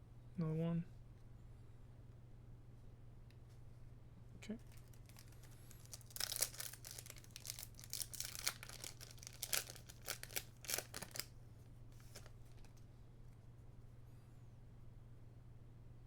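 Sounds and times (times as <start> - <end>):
faint low hum: 0.0 - 16.0
foil wrapper tearing and crinkling: 4.6 - 11.3, 12.0 - 12.8.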